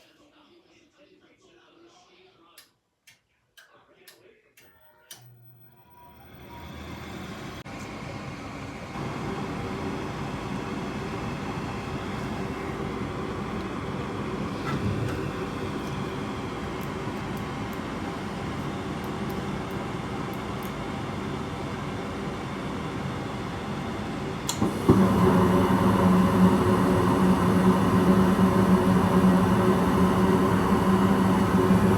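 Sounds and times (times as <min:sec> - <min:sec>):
furnace inducer motor running: 0:05.1 - 0:31.9
blower humming: 0:05.2 - 0:31.9
furnace switch click: 0:24.4 - 0:25.0.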